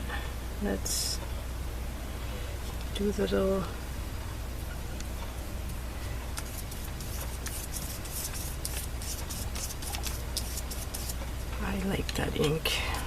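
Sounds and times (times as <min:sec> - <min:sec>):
applicator scratching on paper: 0:06.4 - 0:11.2.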